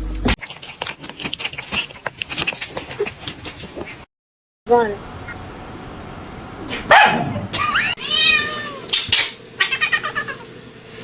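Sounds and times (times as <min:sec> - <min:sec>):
cat meowing: 0:08.0 - 0:08.9, 0:09.6 - 0:10.4.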